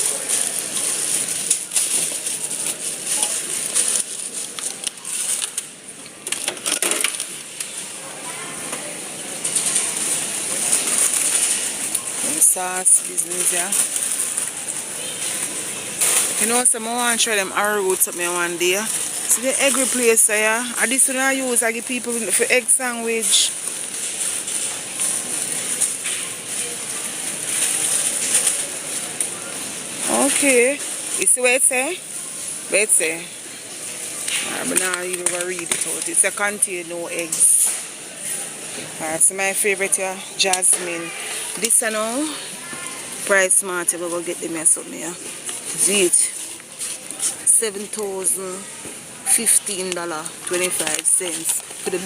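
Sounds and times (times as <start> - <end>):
items clicking and knocking: 0.0 - 7.8, 34.2 - 37.9, 49.4 - 52.0
packaging crinkling: 0.0 - 7.8, 8.8 - 32.5.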